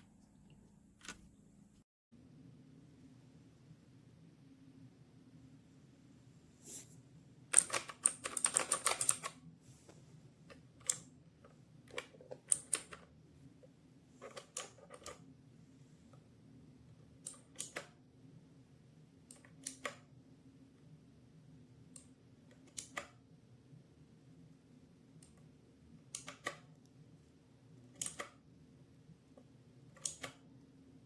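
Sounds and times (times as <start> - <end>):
mechanical keyboard typing: 7.5 - 9.4, 11.8 - 13.1, 14.2 - 15.2, 17.2 - 18.0, 22.5 - 23.2, 26.1 - 26.7, 27.9 - 28.4, 30.0 - 30.4.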